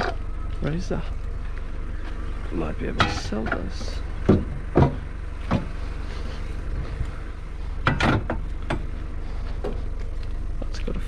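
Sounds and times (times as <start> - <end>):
vehicle engine idling: 0.0 - 11.0
kick scooters knocking and clanking: 2.9 - 5.8.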